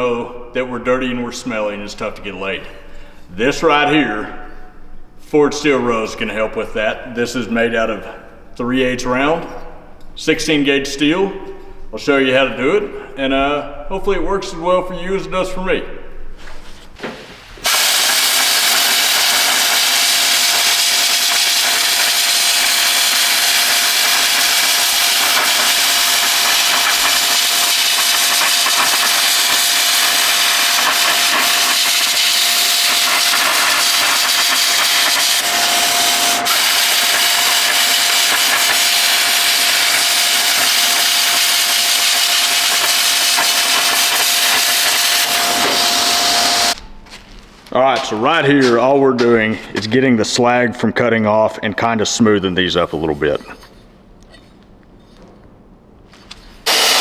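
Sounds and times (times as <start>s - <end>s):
power tool cutting steel: 17.6s - 46.8s, 56.7s - 57.0s.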